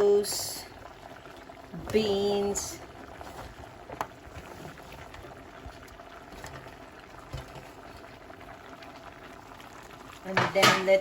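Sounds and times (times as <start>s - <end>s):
pot boiling with bubbling hiss: 0.0s - 11.0s.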